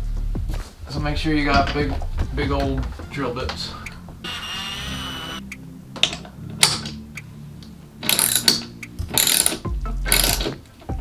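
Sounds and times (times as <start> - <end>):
ratchet clicking bursts: 8.0 - 10.5.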